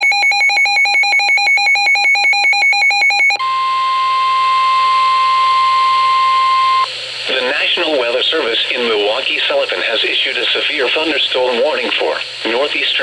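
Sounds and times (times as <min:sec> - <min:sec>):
steady warning alarm tone: 0:00.0 - 0:07.8.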